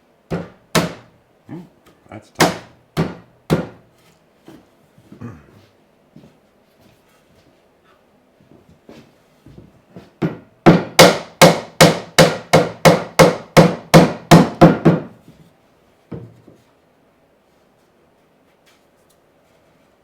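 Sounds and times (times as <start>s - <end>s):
hammer striking wood: 0.3s - 1.1s, 2.4s - 3.8s, 10.2s - 15.2s.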